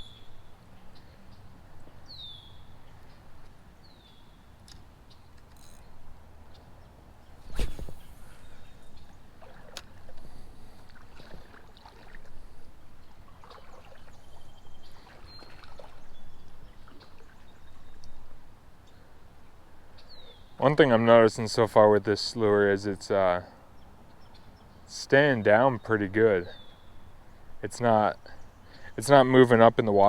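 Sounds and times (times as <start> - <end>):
wading through creek water: 7.5 - 18.2.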